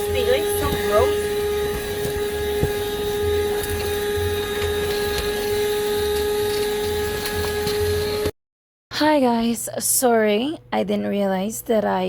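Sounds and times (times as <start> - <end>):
handheld vacuum motor whine: 0.0 - 8.4.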